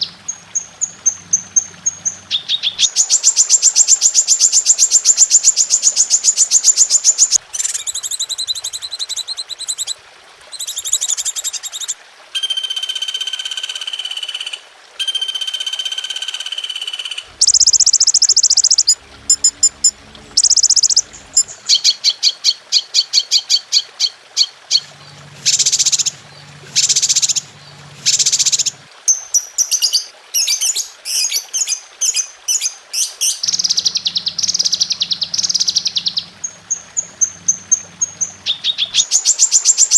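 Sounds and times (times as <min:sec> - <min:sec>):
recorded songbird calls: 0:00.0 - 0:10.0, 0:10.6 - 0:39.9.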